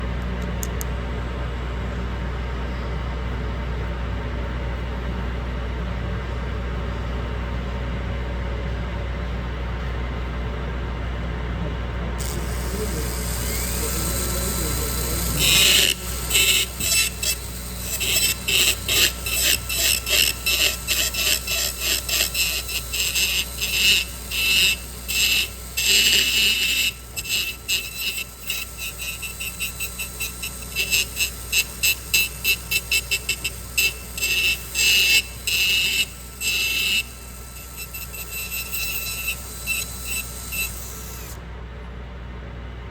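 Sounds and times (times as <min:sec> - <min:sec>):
drill burr grinding bursts: 0:12.2 - 0:41.4
surgical drill whine: 0:12.2 - 0:41.9.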